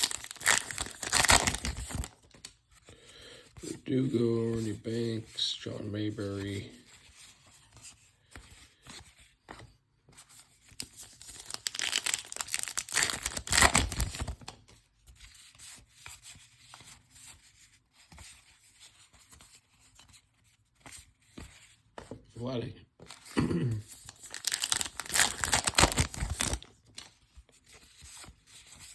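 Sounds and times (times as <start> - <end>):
wrapper tearing open: 0.0 - 2.1, 11.2 - 14.4, 24.1 - 26.7
cards rustling and sliding: 0.0 - 22.2, 23.0 - 28.9.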